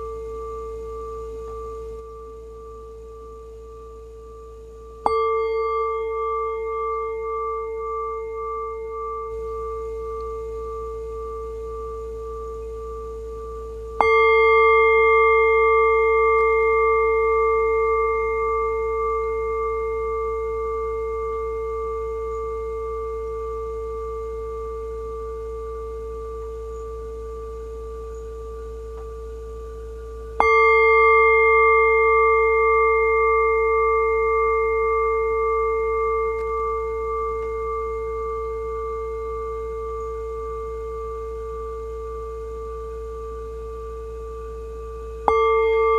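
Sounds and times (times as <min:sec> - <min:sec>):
bell ringing: 0:45.3 - 0:45.9.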